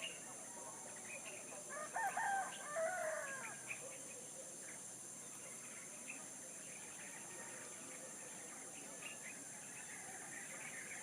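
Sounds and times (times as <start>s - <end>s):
small birds chirping: 0.0s - 11.0s
rooster crowing: 1.7s - 3.6s.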